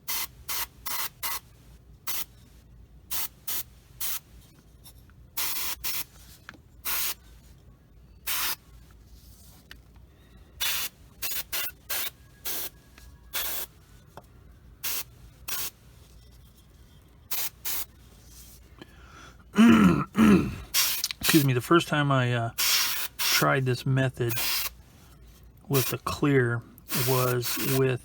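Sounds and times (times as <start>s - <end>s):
airbrush spraying bursts: 5.4s - 6.1s, 6.8s - 7.2s, 8.3s - 8.6s, 10.6s - 12.7s, 13.4s - 13.7s, 14.8s - 15.8s, 17.3s - 17.9s, 20.7s - 21.5s, 22.6s - 23.5s, 24.3s - 24.8s, 25.7s - 26.0s, 26.9s - 28.0s.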